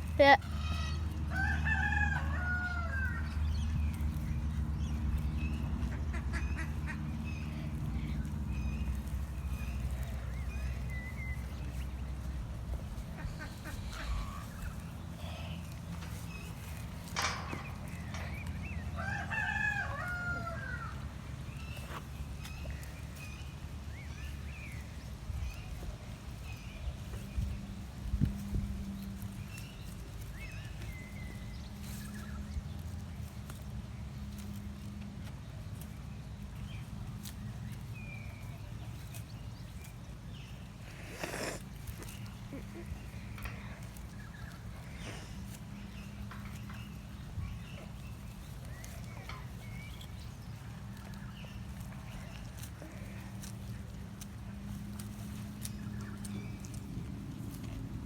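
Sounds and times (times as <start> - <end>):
steady low rumble: 2.8 - 58.0
low rumble: 2.9 - 19.0
fowl chirping and calling: 5.8 - 7.6, 13.0 - 16.2.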